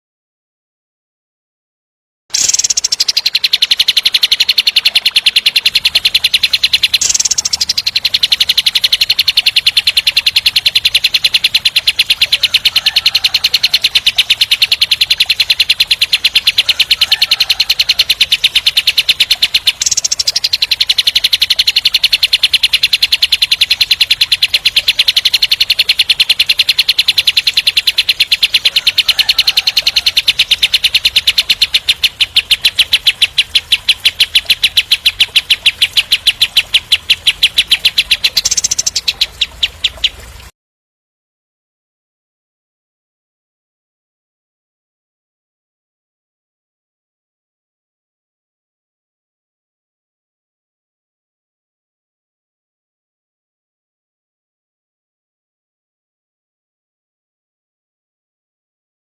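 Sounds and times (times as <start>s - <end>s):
bird rattling trill: 2.3s - 40.4s.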